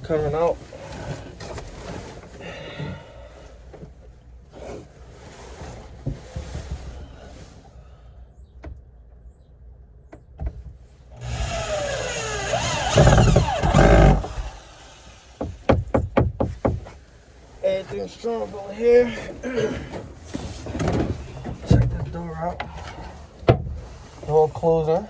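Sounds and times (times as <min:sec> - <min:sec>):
motor running loudly: 0:11.2 - 0:15.4.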